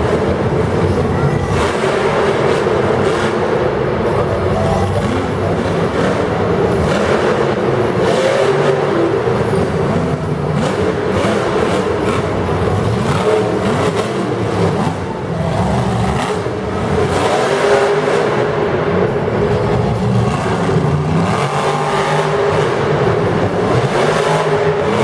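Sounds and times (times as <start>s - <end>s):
truck engine revving: 0.0s - 25.0s.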